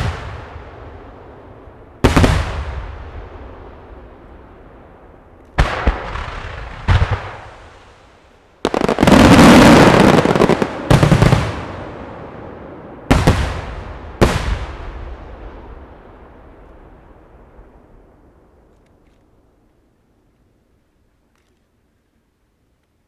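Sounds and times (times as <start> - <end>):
firework crackle: 0.0 - 19.4
firework shells bursting: 2.0 - 12.1.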